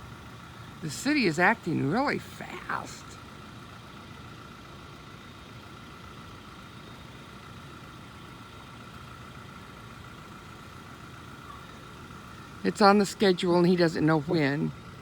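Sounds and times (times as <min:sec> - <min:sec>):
faint steady whine: 0:00.0 - 0:15.0
vehicle engine idling: 0:00.0 - 0:15.0.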